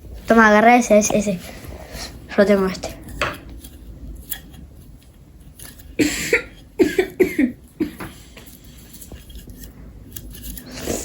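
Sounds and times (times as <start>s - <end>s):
person coughing: 6.0s - 8.2s.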